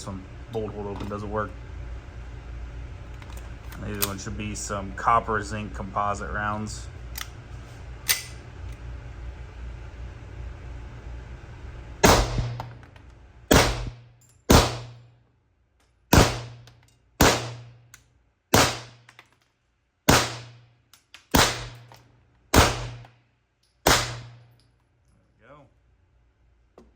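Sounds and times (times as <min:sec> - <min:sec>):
suppressed pistol shots: 0:12.0 - 0:12.7, 0:13.5 - 0:15.0, 0:16.1 - 0:16.6, 0:17.2 - 0:17.7, 0:18.6 - 0:19.0, 0:20.1 - 0:20.6, 0:21.3 - 0:21.8, 0:22.5 - 0:23.1, 0:23.8 - 0:24.4.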